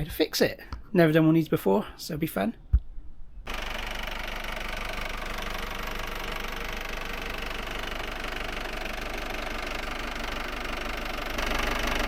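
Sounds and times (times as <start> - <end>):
diesel engine idling: 3.5 - 12.0.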